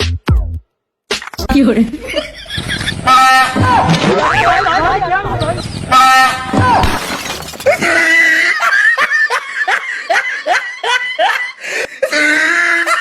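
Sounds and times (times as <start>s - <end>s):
person laughing hard: 7.7s - 13.0s.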